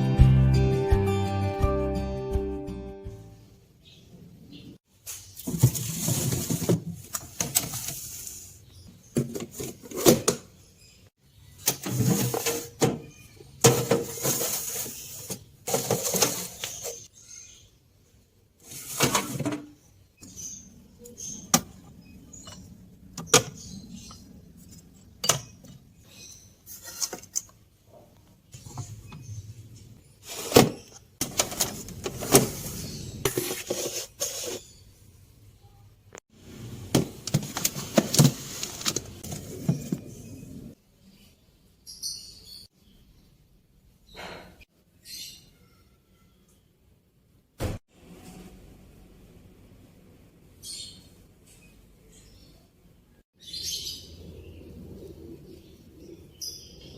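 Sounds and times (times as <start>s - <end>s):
scraping or rustling: 5.0s - 8.6s, 11.8s - 12.9s, 13.6s - 17.1s, 18.6s - 19.7s, 30.2s - 34.8s, 37.3s - 40.7s.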